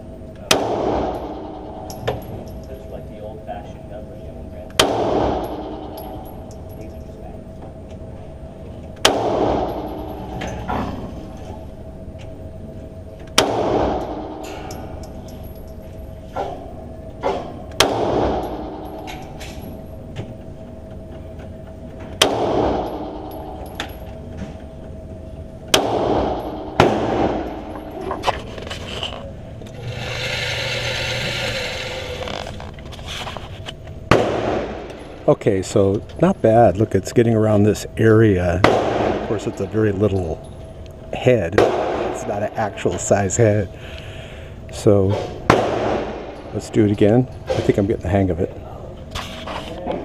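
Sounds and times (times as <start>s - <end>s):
pistol shots with ringing echo: 0.4s - 2.6s, 4.7s - 6.8s, 9.0s - 10.8s, 13.4s - 15.3s, 17.2s - 19.8s, 22.2s - 24.1s, 25.7s - 28.0s, 34.1s - 35.2s, 38.6s - 39.9s, 41.6s - 42.7s, 45.5s - 46.5s.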